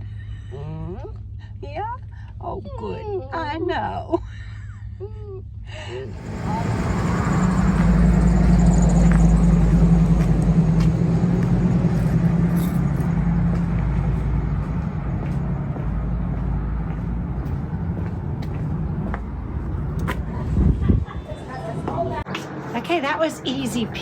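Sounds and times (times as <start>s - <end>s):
engine and road rumble: 5.5s - 24.0s.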